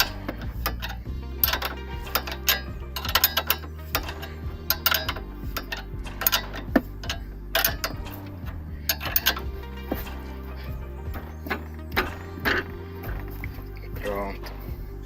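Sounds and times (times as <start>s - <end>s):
ratchet wrench clicking: 0.0s - 9.5s
low hum: 0.0s - 15.0s.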